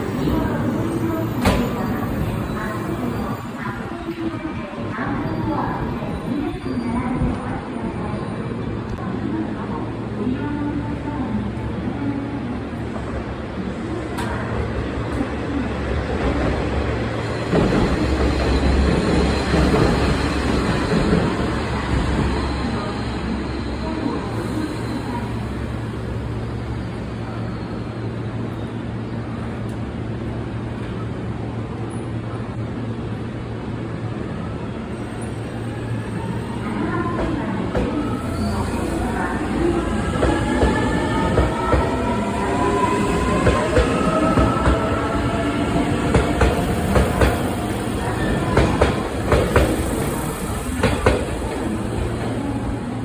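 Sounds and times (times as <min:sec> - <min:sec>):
electric train humming: 0:36.2 - 0:52.5.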